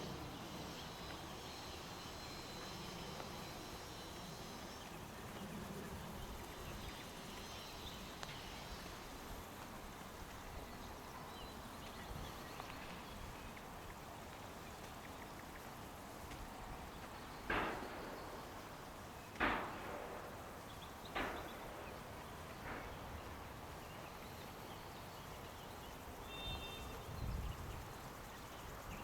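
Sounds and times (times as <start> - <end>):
steady outdoor hiss: 0.0 - 29.0
distant birds chirping: 3.4 - 29.0
thin bird whistle: 26.2 - 27.6.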